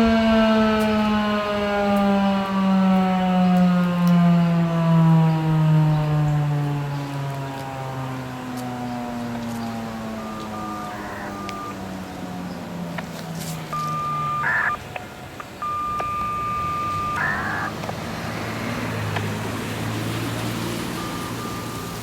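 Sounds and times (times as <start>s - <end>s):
siren winding down: 0.0s - 14.9s, 15.6s - 22.0s
loud high steady beep: 10.2s - 11.8s, 13.7s - 14.8s, 15.6s - 17.7s, 21.0s - 22.0s.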